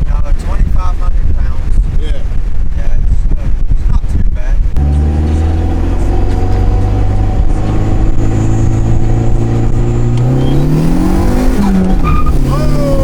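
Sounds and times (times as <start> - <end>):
car engine accelerating: 4.7 - 13.0.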